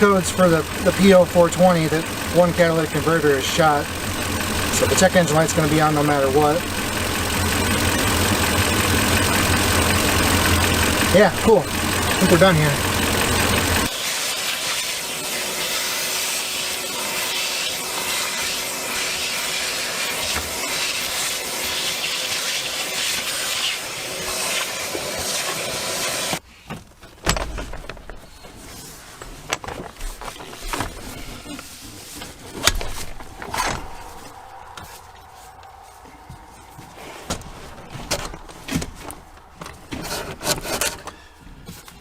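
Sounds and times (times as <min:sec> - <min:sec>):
van engine idling: 0:00.0 - 0:13.9, 0:27.4 - 0:41.3
clicks and knocks: 0:26.7 - 0:31.0.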